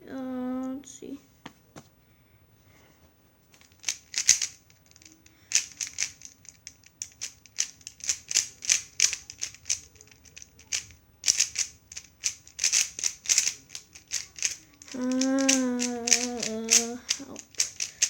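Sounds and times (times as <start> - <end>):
puzzle cube plastic clicks: 3.6 - 18.0.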